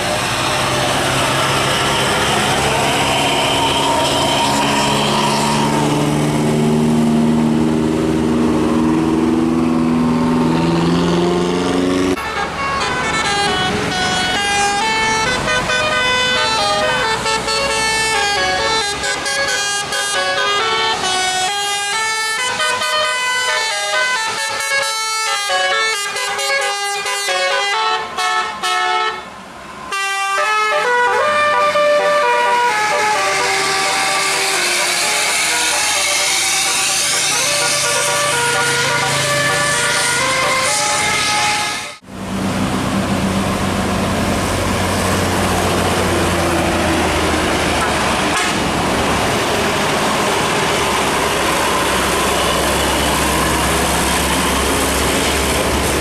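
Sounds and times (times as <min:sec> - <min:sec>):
bus musical air horn: 0:01.2 - 0:05.8, 0:12.0 - 0:42.0, 0:47.7 - 0:48.8.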